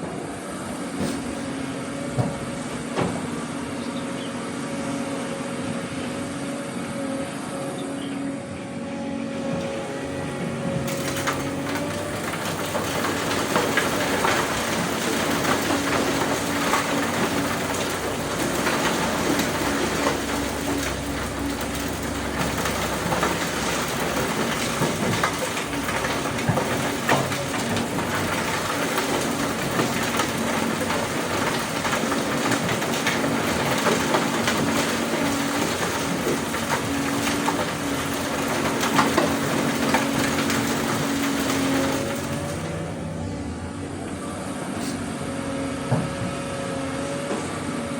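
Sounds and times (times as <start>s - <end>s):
rock and soil clattering: 0.0s - 3.4s, 9.4s - 43.4s
excavator engine running: 0.0s - 47.9s.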